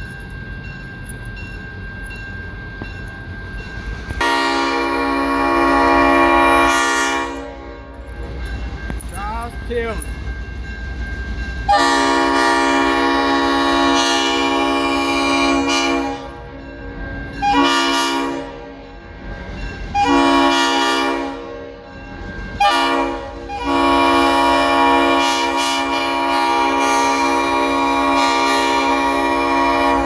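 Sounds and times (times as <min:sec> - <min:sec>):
locomotive air horn blasts: 0:04.2 - 0:07.8, 0:11.7 - 0:16.4, 0:17.4 - 0:18.7, 0:20.0 - 0:21.5, 0:22.6 - 0:30.0.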